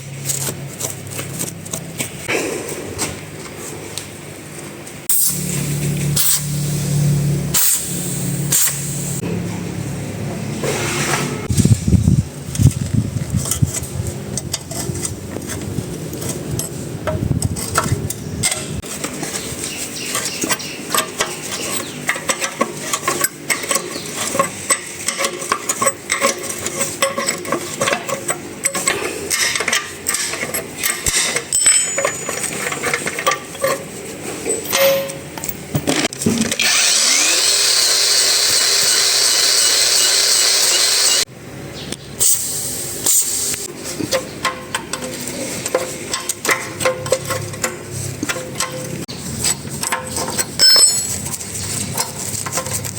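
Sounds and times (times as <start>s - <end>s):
tools clattering and scraping: 12.5s - 36.7s, 43.1s - 52.9s
loud spray hiss: 42.2s - 43.7s.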